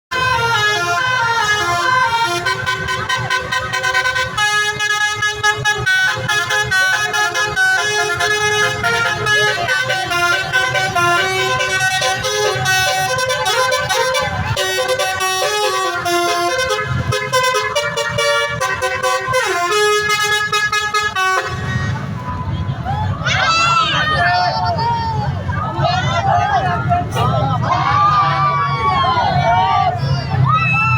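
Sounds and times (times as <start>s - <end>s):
bus musical horn melody: 0.1s - 22.6s.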